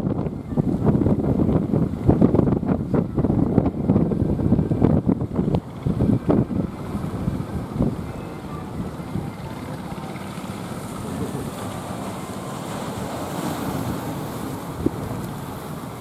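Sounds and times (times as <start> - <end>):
ocean waves breaking: 0.0 - 16.0
wind buffeting microphone: 0.0 - 16.0.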